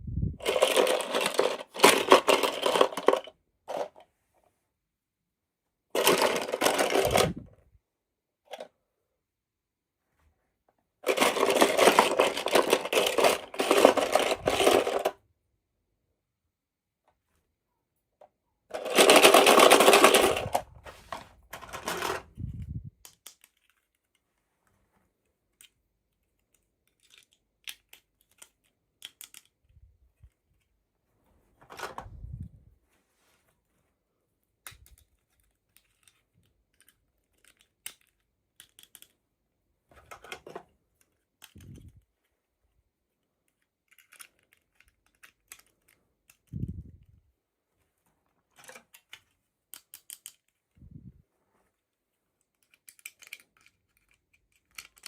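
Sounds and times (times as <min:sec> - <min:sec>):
toy packaging clicks and rustles: 0:00.4 - 0:04.1, 0:05.9 - 0:07.5, 0:08.5 - 0:08.8, 0:11.0 - 0:15.3, 0:18.7 - 0:30.9, 0:31.6 - 0:32.3, 0:34.6 - 0:47.4, 0:48.0 - 0:50.9, 0:51.7 - 0:55.0.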